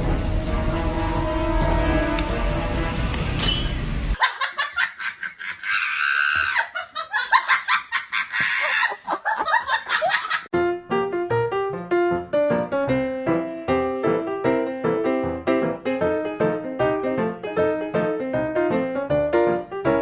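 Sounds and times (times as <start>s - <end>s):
music: 0.0s - 4.2s, 10.5s - 20.0s
piano music: 0.0s - 4.2s, 10.5s - 20.0s
high laughter-like bursts: 4.2s - 10.5s.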